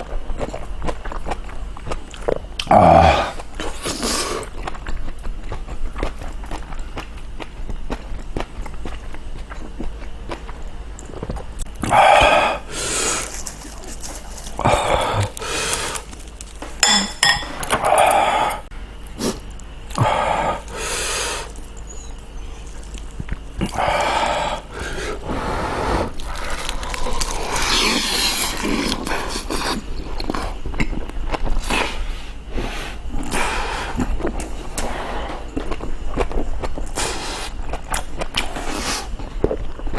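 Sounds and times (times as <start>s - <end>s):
slurping and chewing: 0.0s - 16.6s, 17.6s - 39.9s
steady low hum: 0.0s - 39.9s.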